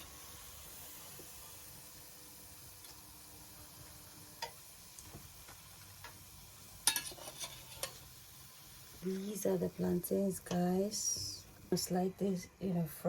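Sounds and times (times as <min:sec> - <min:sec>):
oil sizzling in a pan: 0:00.0 - 0:12.1.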